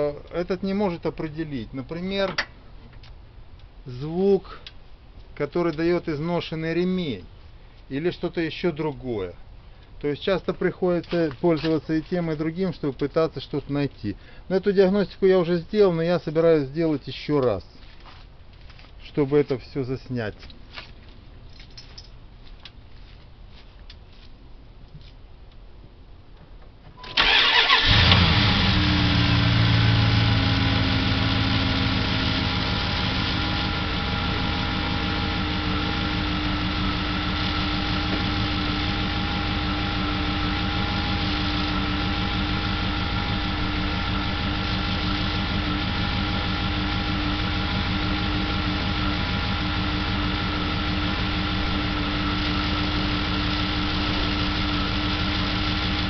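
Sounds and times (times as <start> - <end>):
car engine starting and idling: 27.0 - 56.0.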